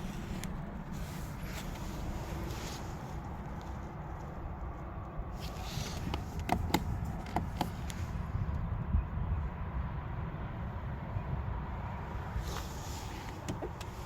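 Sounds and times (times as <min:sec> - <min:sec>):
steady low rumble: 0:00.0 - 0:14.0.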